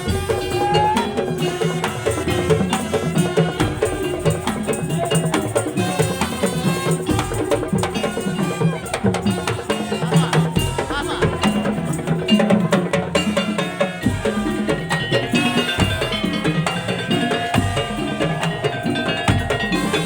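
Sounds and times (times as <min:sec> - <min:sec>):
pitched melody line: 0:00.0 - 0:20.0
wooden slit drums beating: 0:00.0 - 0:20.0
held tone: 0:00.3 - 0:01.5.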